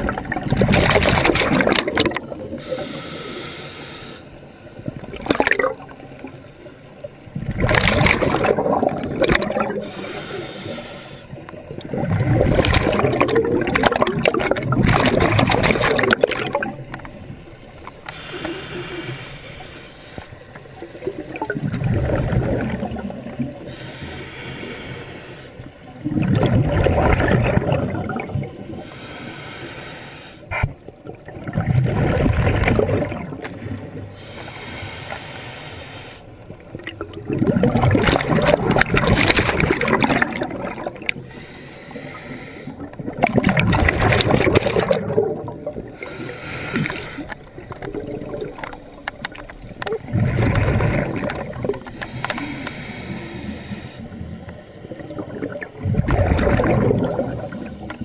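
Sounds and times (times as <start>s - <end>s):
underwater bubble bursts: 0.0s - 2.7s, 4.8s - 10.0s, 11.4s - 18.2s, 20.6s - 23.7s, 25.9s - 28.8s, 30.5s - 34.2s, 36.5s - 41.3s, 42.8s - 52.8s, 53.5s - 58.0s
soft regulator hissing: 9.8s - 11.5s, 18.1s - 20.6s, 23.6s - 25.8s, 28.8s - 30.5s, 34.1s - 36.4s, 51.8s - 54.8s.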